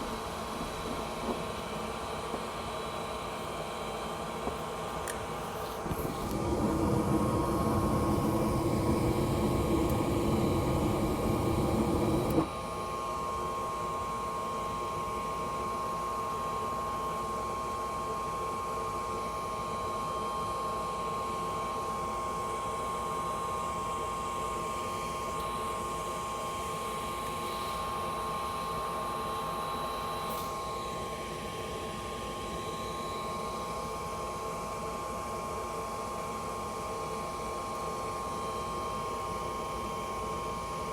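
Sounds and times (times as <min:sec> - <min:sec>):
fan motor hum with whine: 0:00.0 - 0:40.9
furnace burner flame rushing: 0:05.3 - 0:12.6.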